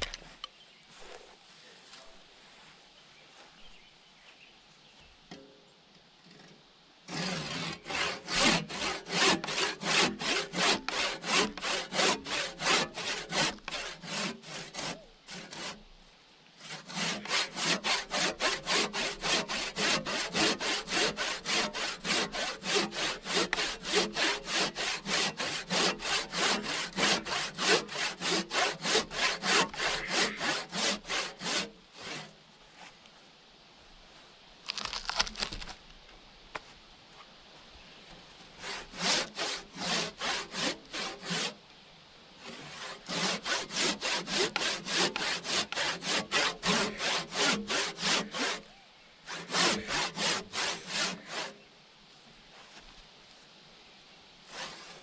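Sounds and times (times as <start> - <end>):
rustling scrape: 0.0 - 3.8, 28.2 - 33.3, 34.1 - 35.8, 49.3 - 53.5
handsaw cutting through log: 7.1 - 15.8, 16.6 - 32.4, 38.6 - 41.6, 42.4 - 48.7, 49.3 - 51.6, 54.5 - 55.0.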